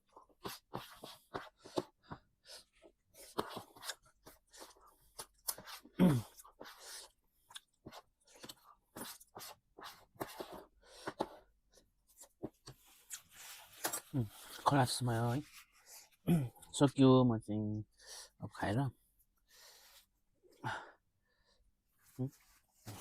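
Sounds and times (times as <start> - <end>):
person chewing and crunching: 2.6 - 10.6.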